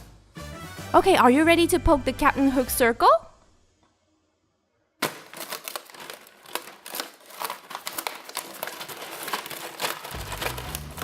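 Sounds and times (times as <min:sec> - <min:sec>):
low background music: 0:00.0 - 0:05.8, 0:09.5 - 0:11.0
paper tearing and crinkling: 0:05.0 - 0:11.0.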